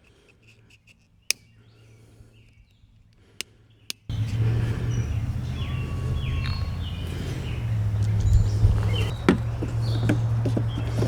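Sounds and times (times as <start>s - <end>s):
birds chirping: 1.2s - 11.0s
steady low hum: 4.1s - 10.9s.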